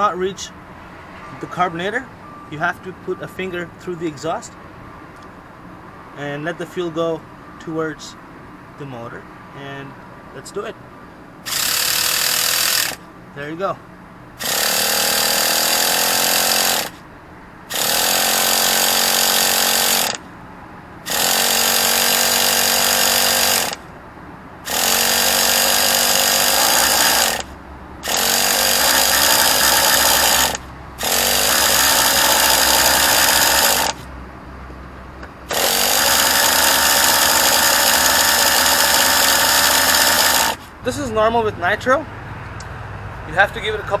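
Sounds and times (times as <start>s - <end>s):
electric starter cranking engine: 11.4s - 13.1s, 14.4s - 17.0s, 17.7s - 20.2s, 21.0s - 23.9s, 24.6s - 34.1s, 35.4s - 40.8s.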